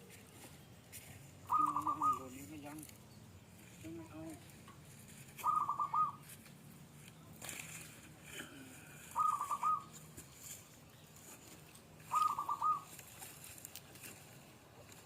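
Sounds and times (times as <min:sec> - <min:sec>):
bird whistling calls: 0:01.4 - 0:02.4, 0:05.4 - 0:06.2, 0:09.1 - 0:10.0, 0:12.0 - 0:12.9.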